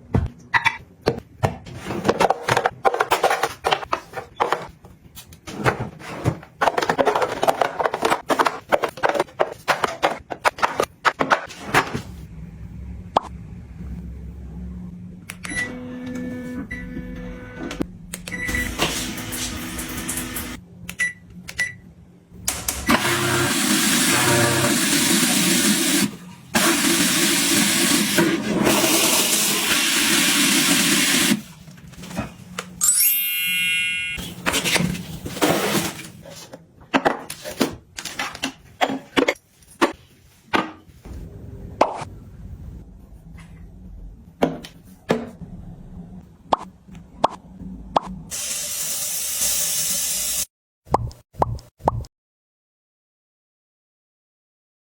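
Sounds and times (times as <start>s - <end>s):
objects being handled: 1.4s - 12.2s
low steady hum: 12.2s - 18.5s.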